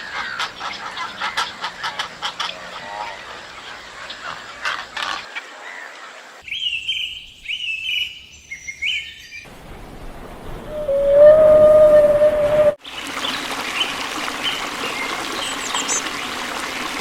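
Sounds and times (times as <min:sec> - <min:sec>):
bird chirping: 0:06.4 - 0:09.5.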